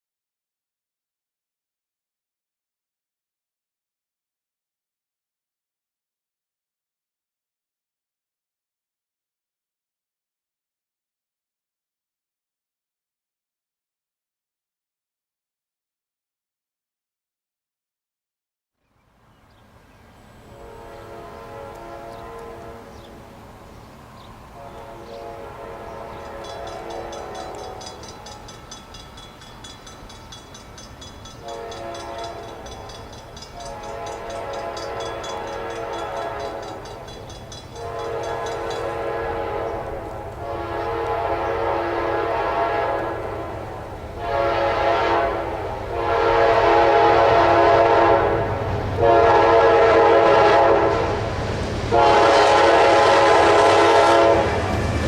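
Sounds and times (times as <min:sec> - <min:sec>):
locomotive air horn blasts: 0:20.4 - 0:23.3, 0:24.6 - 0:28.6, 0:31.4 - 0:33.0, 0:33.6 - 0:54.9.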